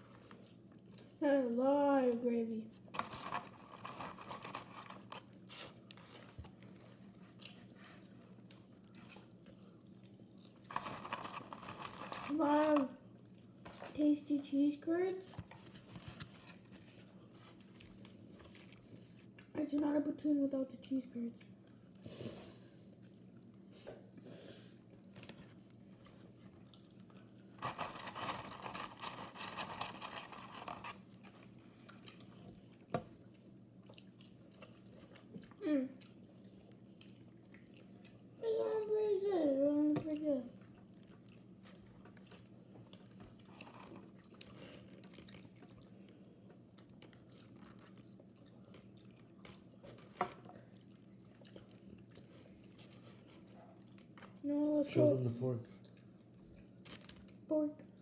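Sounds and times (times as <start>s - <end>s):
low background hum: 0.0s - 58.0s
person chewing food: 2.9s - 12.3s, 15.6s - 19.5s, 22.9s - 38.4s, 40.1s - 54.4s.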